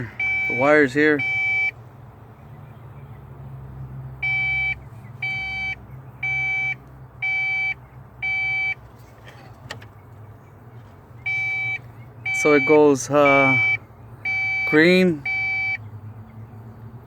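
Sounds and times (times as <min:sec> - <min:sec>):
electronic warning beeps: 0:00.0 - 0:01.8, 0:04.2 - 0:08.8, 0:11.3 - 0:15.8.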